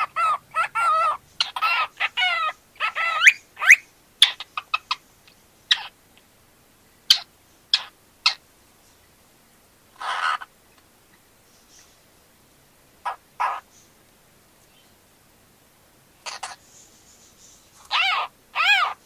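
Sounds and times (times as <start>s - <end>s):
cockatiel chirping and whistling: 0.0s - 4.5s, 17.9s - 19.0s.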